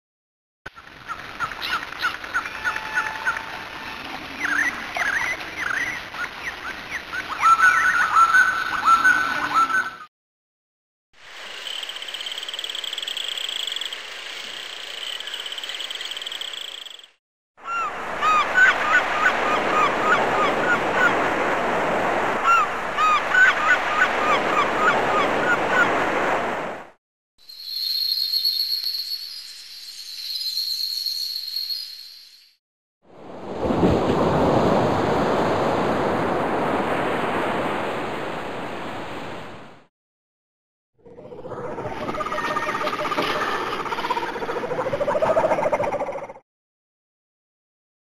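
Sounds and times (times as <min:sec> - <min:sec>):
flock of birds calling: 0:01.1 - 0:10.0
high squeaky animal calls: 0:07.4 - 0:10.0.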